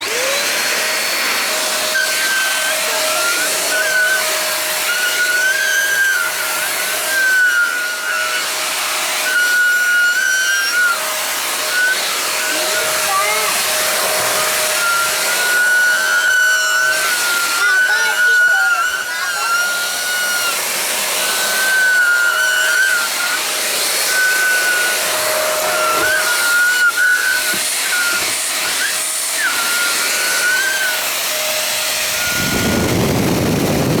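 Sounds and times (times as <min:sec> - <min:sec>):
handheld vacuum cleaner running: 0:00.0 - 0:34.0
deeper air rush: 0:32.0 - 0:34.0.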